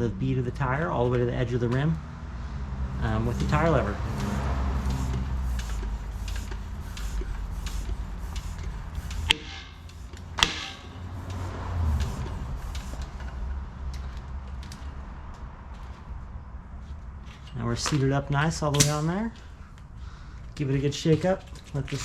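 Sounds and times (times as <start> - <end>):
floor pump pumping tire: 2.9 - 14.8
tire beads popping: 3.0 - 22.0.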